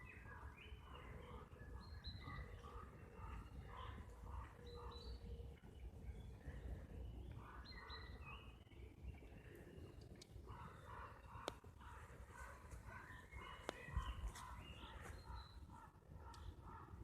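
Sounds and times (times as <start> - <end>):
faint birdsong chirps: 0.0 - 17.0.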